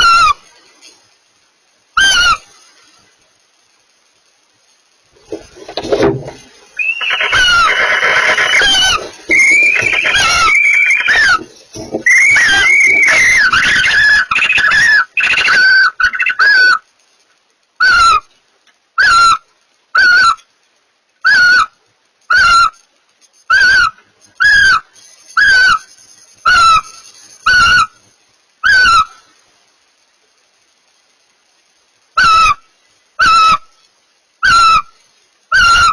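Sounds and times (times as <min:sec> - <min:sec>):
barn owls calling: 0:00.0 - 0:00.5, 0:02.0 - 0:02.9, 0:06.7 - 0:16.9, 0:17.8 - 0:18.3, 0:19.0 - 0:20.5, 0:21.2 - 0:22.8, 0:23.5 - 0:28.0, 0:28.6 - 0:29.3, 0:32.2 - 0:33.8, 0:34.4 - 0:35.9.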